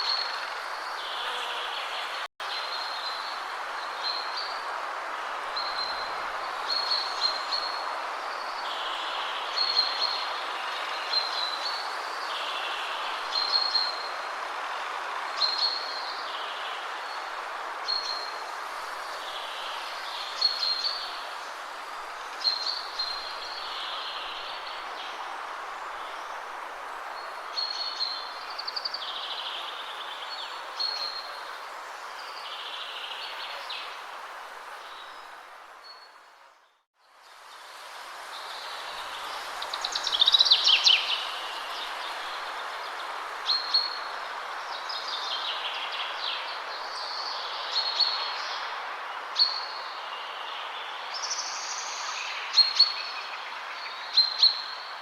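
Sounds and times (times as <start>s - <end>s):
steady rushing hiss: 37.1s - 53.7s.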